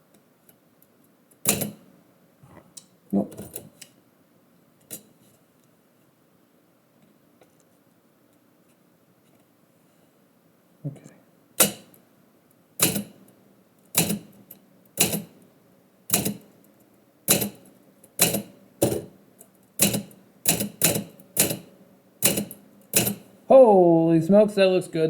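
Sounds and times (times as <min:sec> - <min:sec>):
typewriter keys striking: 0:01.4 - 0:01.8, 0:11.6 - 0:11.9, 0:12.8 - 0:13.1, 0:14.0 - 0:14.4, 0:15.0 - 0:15.3, 0:16.1 - 0:16.4, 0:17.3 - 0:17.6, 0:18.2 - 0:19.1, 0:19.8 - 0:23.2.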